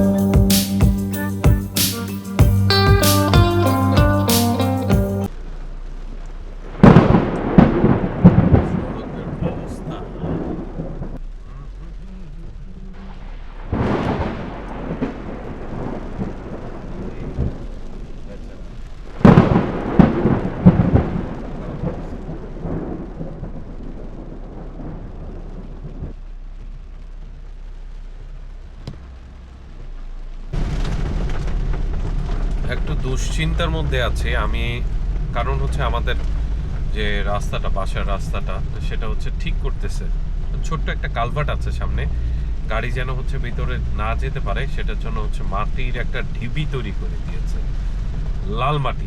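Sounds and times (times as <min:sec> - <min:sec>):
heavy rain: 0:01.9 - 0:49.0
thunder cracking and rolling: 0:06.7 - 0:11.2, 0:13.0 - 0:26.2, 0:28.8 - 0:49.0.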